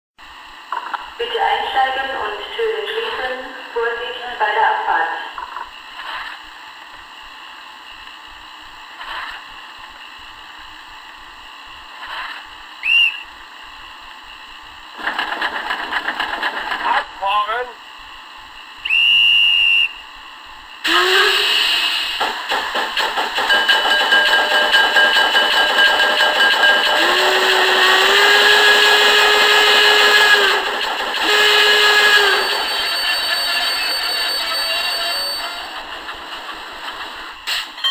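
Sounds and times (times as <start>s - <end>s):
high train whistle blast: 12.8s - 13.3s, 18.8s - 20.1s, 20.8s - 22.2s, 23.9s - 35.8s
steam train hiss: 20.8s - 22.8s, 26.9s - 33.7s
fast rhythmic chugging: 22.4s - 37.3s.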